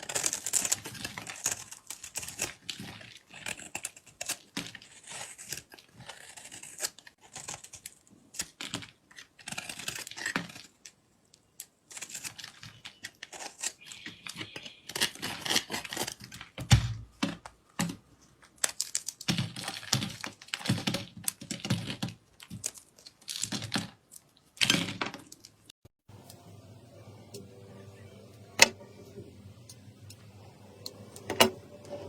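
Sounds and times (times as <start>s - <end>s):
slime crackling and popping: 18.5s - 25.7s
faint steady hum: 26.1s - 32.0s.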